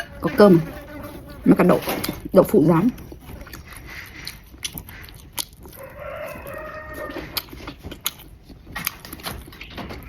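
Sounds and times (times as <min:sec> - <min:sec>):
rooster crowing: 0:05.7 - 0:07.4.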